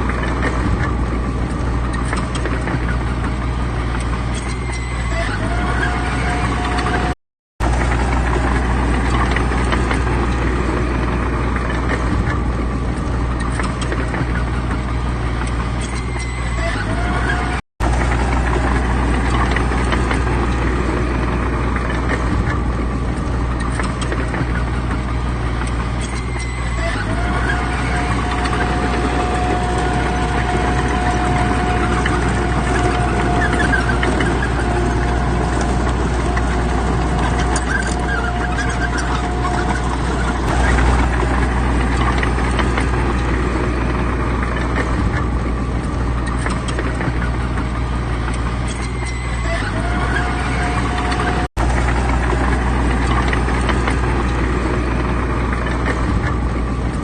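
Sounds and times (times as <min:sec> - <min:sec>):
diesel machinery running: 0:00.0 - 0:57.0
steady whine: 0:14.0 - 0:57.0.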